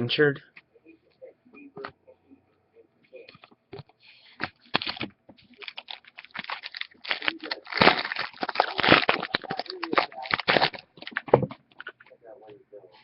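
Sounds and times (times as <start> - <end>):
trading card packaging rustling: 4.4 - 12.0.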